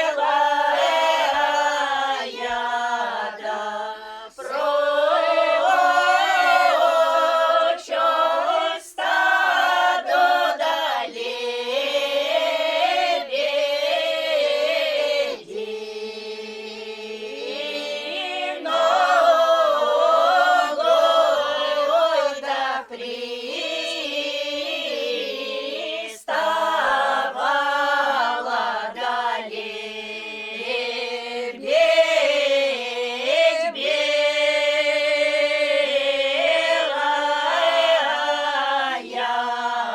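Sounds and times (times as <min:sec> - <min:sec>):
choir singing a cappella folk song: 0:00.0 - 0:39.9.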